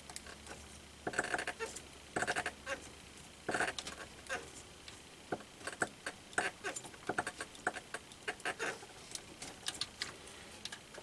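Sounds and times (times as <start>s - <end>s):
computer parts clicking and rattling: 5.6s - 11.0s.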